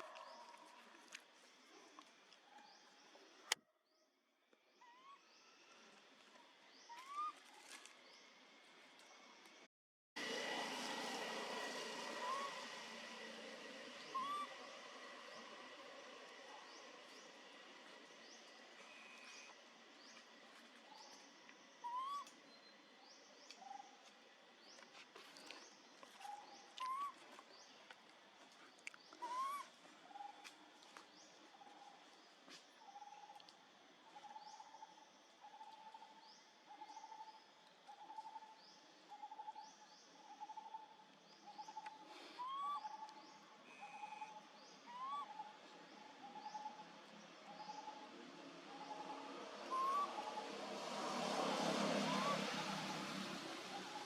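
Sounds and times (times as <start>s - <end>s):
hoot-like notes: 13.8s - 16.6s
baby monkey crying: 14.0s - 14.7s.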